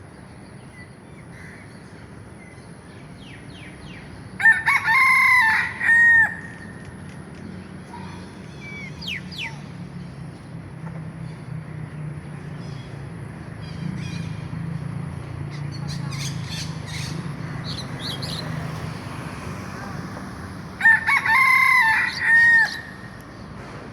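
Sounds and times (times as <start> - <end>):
rooster crowing: 4.4 - 6.8, 20.8 - 23.2.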